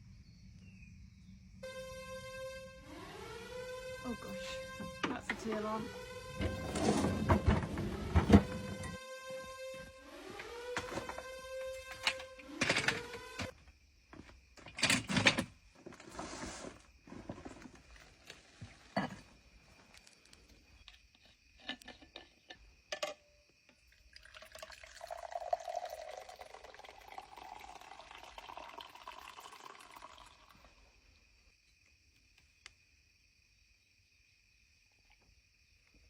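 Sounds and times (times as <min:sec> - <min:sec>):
liquid pouring into a cup: 0:23.8 - 0:30.8.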